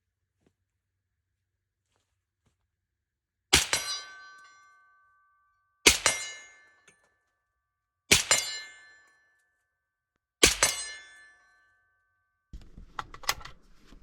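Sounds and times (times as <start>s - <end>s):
ringing metallic clang: 3.6s - 5.2s, 5.9s - 7.0s, 8.1s - 9.4s, 10.4s - 11.7s.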